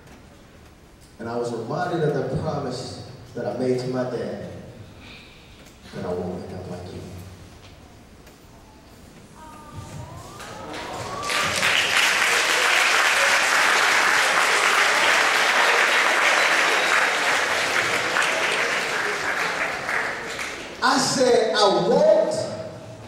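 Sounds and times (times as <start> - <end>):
audience applauding: 10.2 - 21.1.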